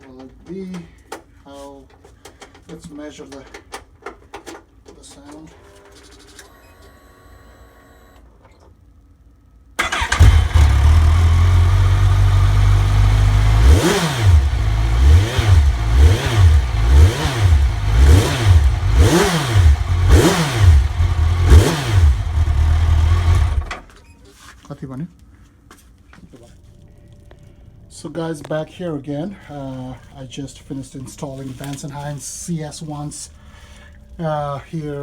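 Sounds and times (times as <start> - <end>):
motorcycle engine idling and revving: 9.8 - 23.9.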